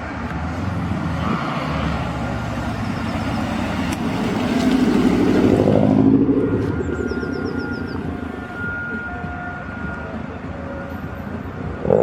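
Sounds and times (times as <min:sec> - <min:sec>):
car engine running at low revs: 0:02.4 - 0:08.9.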